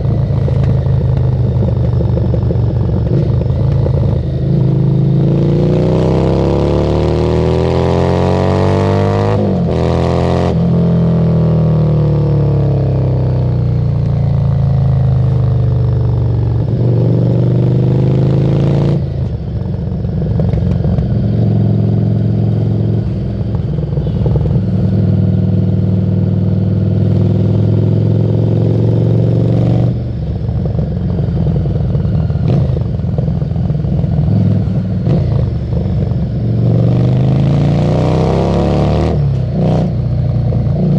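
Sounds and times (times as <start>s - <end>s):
motorcycle engine riding: 0.0s - 40.9s.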